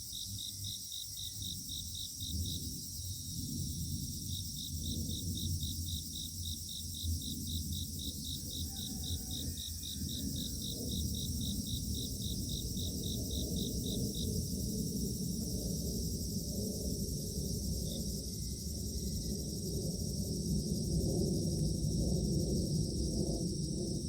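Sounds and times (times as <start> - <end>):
cricket chirping: 0.0 - 24.0
insects trilling drone: 0.0 - 24.0.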